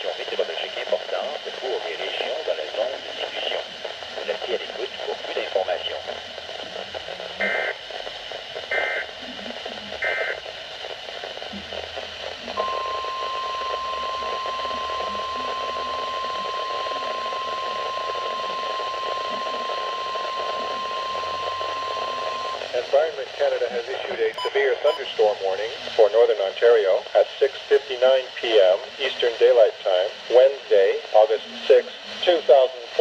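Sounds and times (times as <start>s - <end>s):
static hiss: 0.0s - 33.0s
digital data bursts: 7.4s - 7.8s, 8.7s - 9.2s, 9.9s - 10.4s, 12.6s - 23.8s
steady warning alarm tone: 7.4s - 7.8s, 10.0s - 10.4s, 12.6s - 22.7s.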